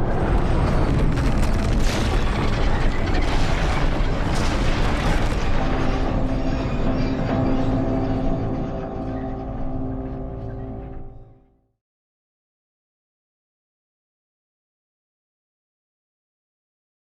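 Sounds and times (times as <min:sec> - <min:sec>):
heavy rumbling and crashing: 0:00.0 - 0:11.1
dark orchestral film score: 0:00.0 - 0:11.5.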